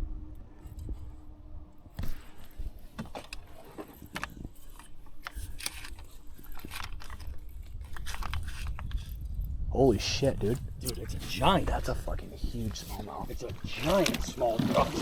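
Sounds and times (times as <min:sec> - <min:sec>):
low rumble: 0:00.0 - 0:02.9, 0:07.2 - 0:15.0.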